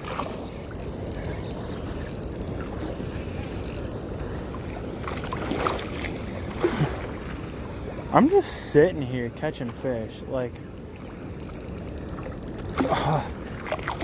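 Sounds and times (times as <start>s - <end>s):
fishing reel cranking: 0.6s - 1.4s, 2.0s - 2.6s, 3.6s - 4.2s, 6.8s - 7.6s, 10.7s - 13.6s
rushing spillway water: 4.6s - 10.9s.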